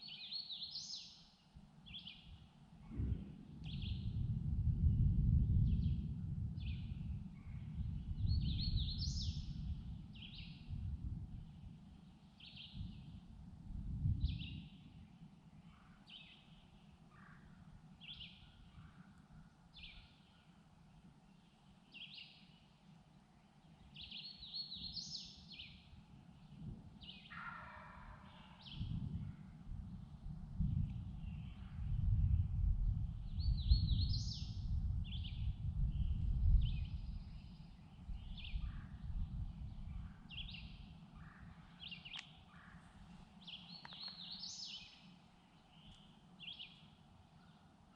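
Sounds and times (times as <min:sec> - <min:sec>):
songbird singing: 0:00.0 - 0:04.3, 0:04.9 - 0:13.3, 0:14.2 - 0:47.9
low outdoor rumble: 0:02.9 - 0:12.0.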